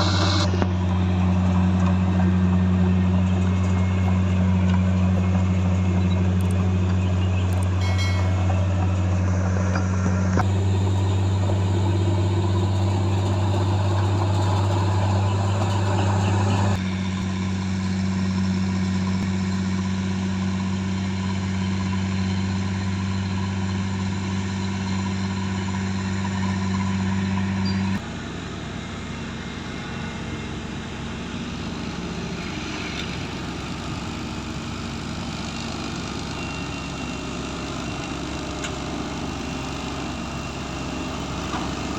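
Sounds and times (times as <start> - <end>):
diesel machinery humming: 0.0 - 17.2, 28.0 - 41.9
rough engine noise: 0.0 - 41.9.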